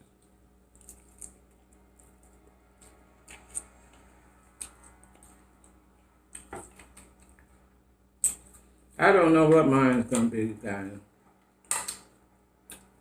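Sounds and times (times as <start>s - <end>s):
faint steady hum: 0.0s - 13.0s
chewing clicks and smacks: 11.7s - 13.0s.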